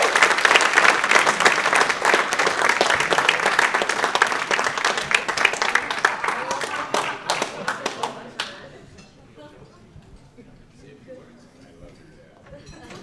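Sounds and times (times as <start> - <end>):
audience applauding: 0.0 - 8.7.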